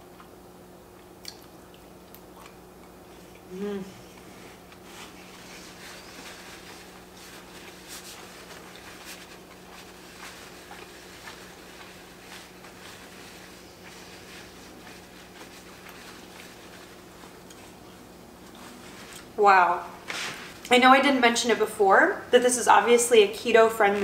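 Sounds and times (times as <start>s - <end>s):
chewing and mouth noises: 0.0s - 3.5s, 7.2s - 19.3s
low electrical hum: 0.0s - 24.0s.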